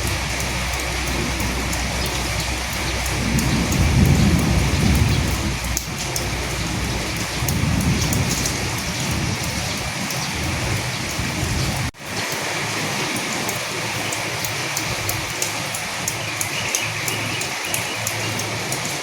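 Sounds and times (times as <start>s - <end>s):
thunder rumble: 0.0s - 12.0s
steady rain pattering: 0.0s - 19.0s.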